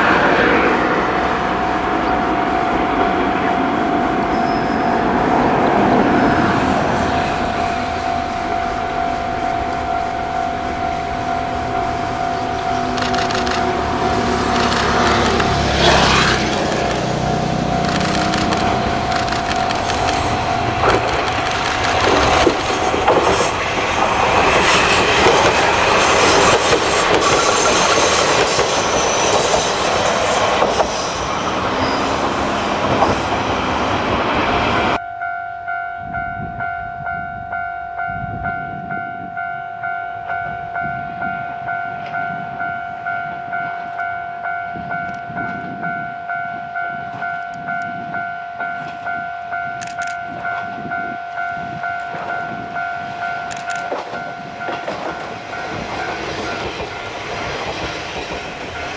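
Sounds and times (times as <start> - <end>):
level crossing alarm ringing: 0.0 - 23.5, 34.9 - 57.1
diesel railcar passing: 0.0 - 58.9.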